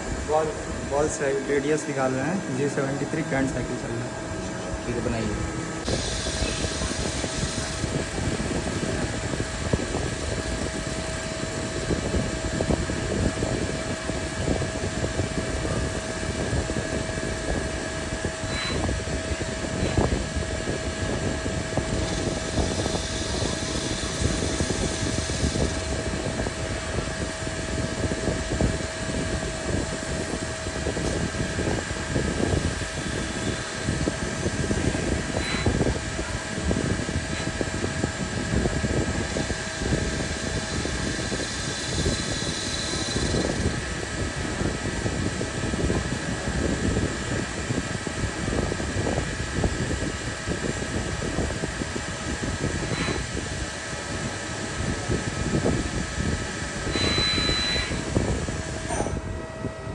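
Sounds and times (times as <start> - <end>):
lathe machine whine: 0.0 - 59.9.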